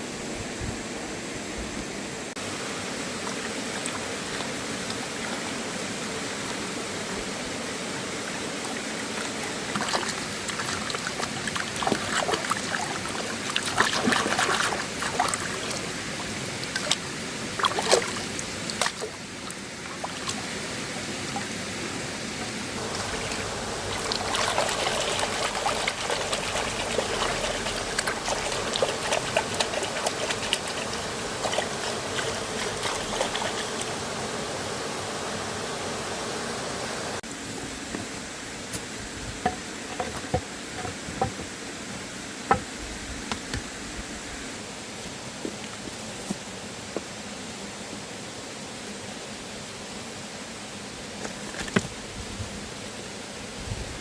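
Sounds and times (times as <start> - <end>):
river water flowing: 2.1 - 37.2.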